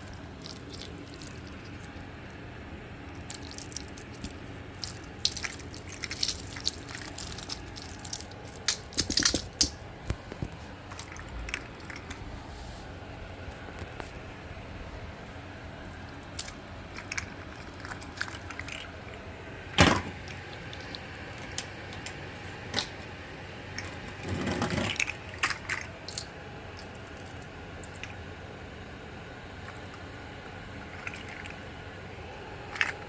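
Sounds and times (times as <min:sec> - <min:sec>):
rustling scrape: 0:12.1 - 0:14.2.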